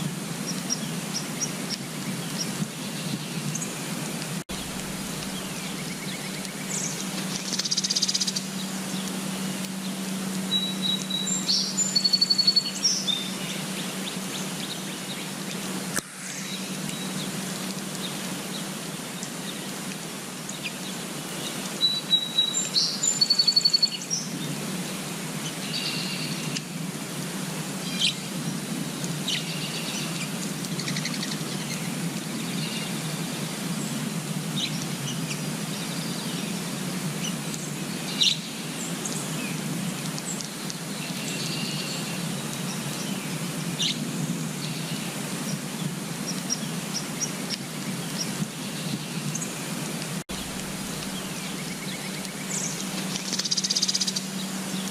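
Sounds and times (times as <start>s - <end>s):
steady background hiss: 0.0s - 54.9s
small birds chirping: 4.5s - 15.6s, 20.4s - 26.6s, 34.6s - 49.6s, 50.3s - 54.9s.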